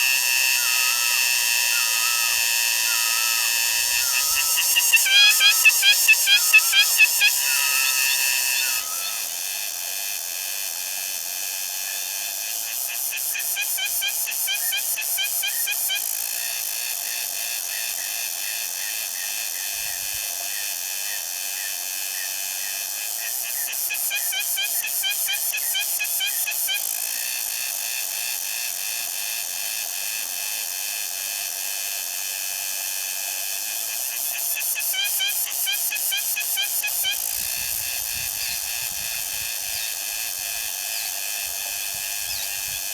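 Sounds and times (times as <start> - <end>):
pulsing insect ticks and chirps: 0.0 - 9.4, 34.1 - 42.9
insects buzzing: 0.0 - 9.8, 12.7 - 27.8, 33.4 - 42.9.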